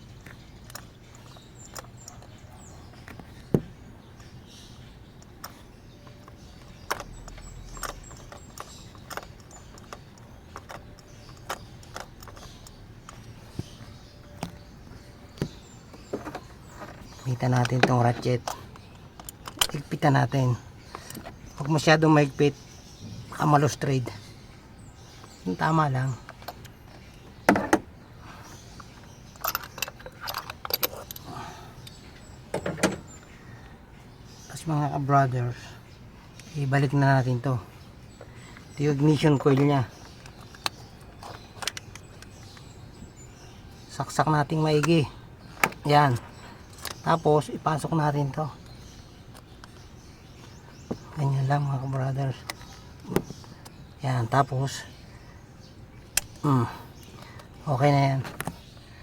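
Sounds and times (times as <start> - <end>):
hand tools clicking on metal parts: 5.2 - 22.4, 28.8 - 33.3, 38.3 - 42.8, 44.0 - 53.8.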